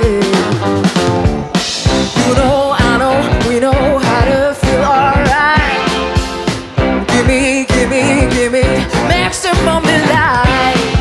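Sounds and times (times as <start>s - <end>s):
drum kit beat: 0.0s - 11.0s
guitar and keyboards: 0.0s - 11.0s.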